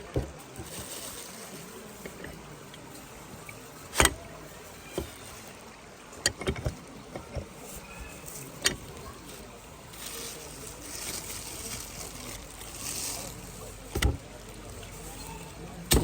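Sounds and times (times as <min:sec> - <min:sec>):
outdoor background noise: 0:00.0 - 0:16.0
sharp knocks and clicks: 0:06.2 - 0:07.5, 0:13.9 - 0:14.3.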